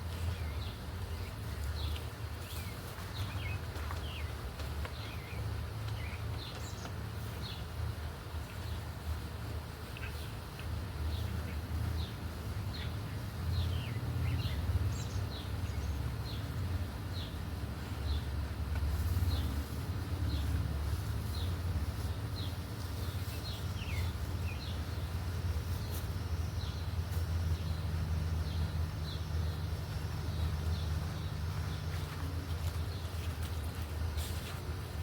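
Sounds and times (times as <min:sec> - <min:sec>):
bird chirping: 0:20.3 - 0:33.4.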